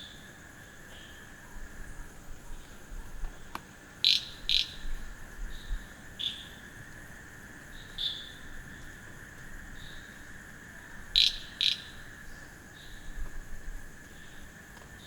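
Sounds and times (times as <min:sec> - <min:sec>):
insect drone: 0:00.0 - 0:15.0
sharp frog calls: 0:03.5 - 0:13.3.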